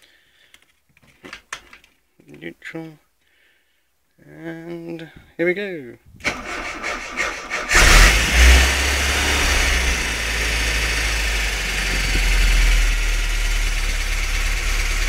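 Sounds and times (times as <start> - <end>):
engine starting and idling: 6.2 - 15.0.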